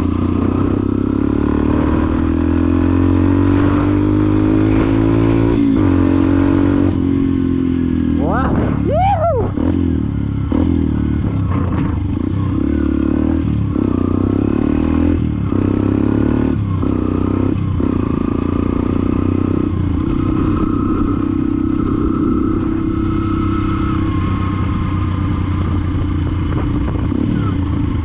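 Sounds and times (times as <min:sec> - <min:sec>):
motorcycle engine accelerating: 0:00.0 - 0:28.0.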